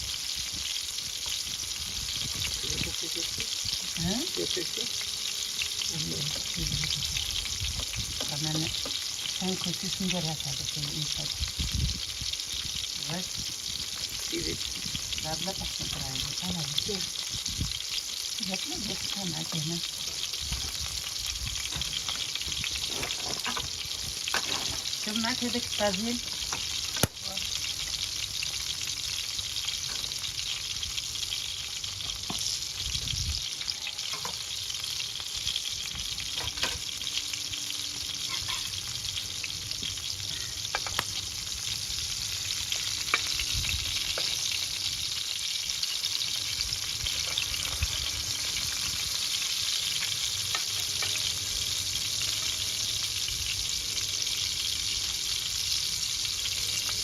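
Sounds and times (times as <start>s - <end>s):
food sizzling over fire: 0.0s - 57.0s
fire pops and crackles: 19.6s - 25.1s, 26.1s - 30.7s, 40.7s - 41.2s.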